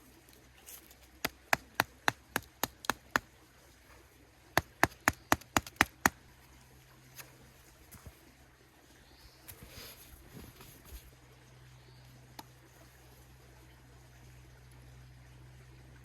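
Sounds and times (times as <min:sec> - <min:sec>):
sharp dry knocks: 0:01.2 - 0:03.3, 0:04.6 - 0:06.2.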